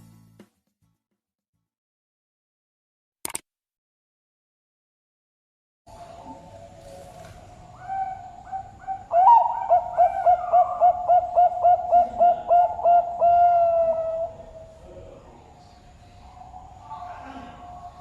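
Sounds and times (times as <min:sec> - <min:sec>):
dove cooing: 0:05.9 - 0:18.0.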